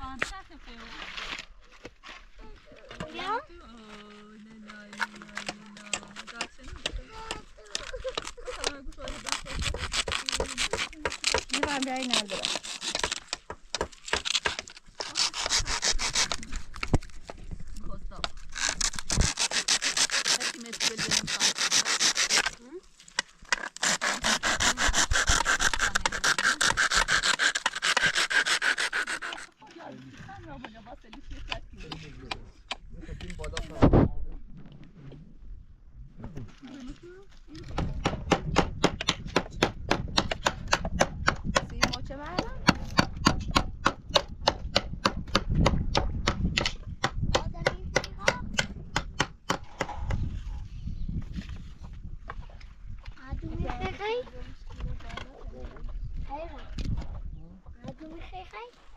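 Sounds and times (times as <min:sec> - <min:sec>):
fast rubbing strokes: 0:07.8 - 0:13.3, 0:15.0 - 0:16.8, 0:18.4 - 0:22.6, 0:23.6 - 0:29.6.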